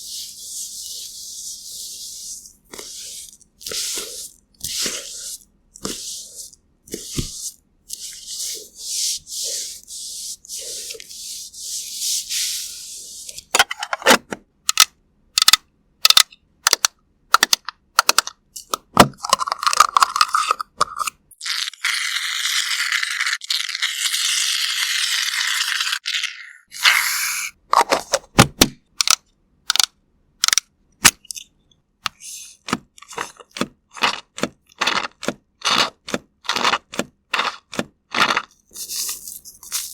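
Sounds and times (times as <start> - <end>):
soft brushing strokes: 0.0 - 13.5.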